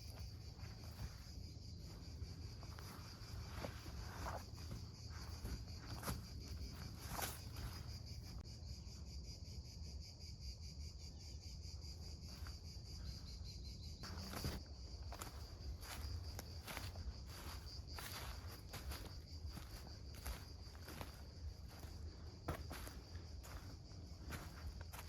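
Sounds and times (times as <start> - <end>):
footsteps on forest floor: 0.0 - 8.4, 14.0 - 25.0
insects trilling: 0.0 - 25.0.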